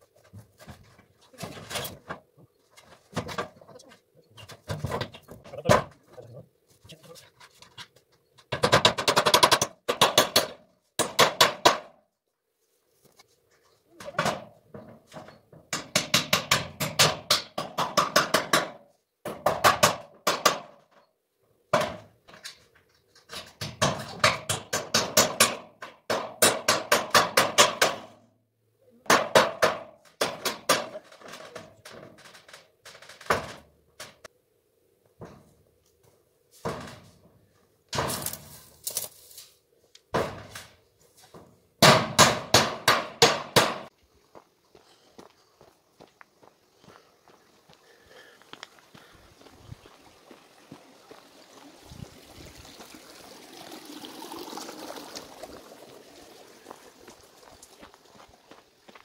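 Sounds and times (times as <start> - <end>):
hammering on a fence: 8.5 - 12.0, 15.2 - 21.0, 23.6 - 28.2, 29.0 - 34.3, 41.8 - 43.9.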